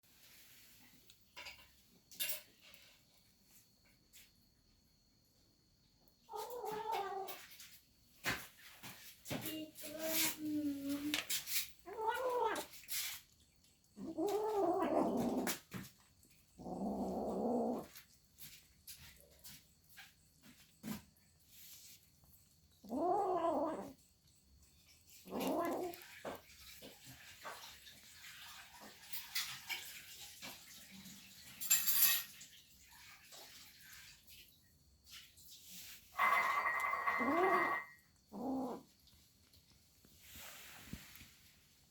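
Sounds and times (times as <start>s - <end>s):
cat chewing and licking: 8.4s - 31.6s, 32.2s - 41.9s
cat yowling: 11.9s - 12.7s, 36.2s - 38.8s
short rustle: 39.3s - 41.9s.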